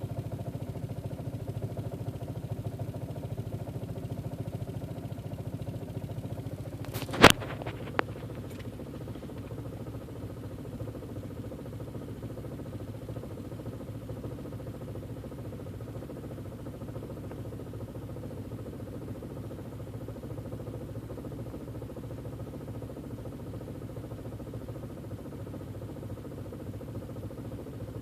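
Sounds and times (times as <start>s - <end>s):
car engine idling roughly: 0.0s - 28.0s
small click: 6.8s - 9.5s.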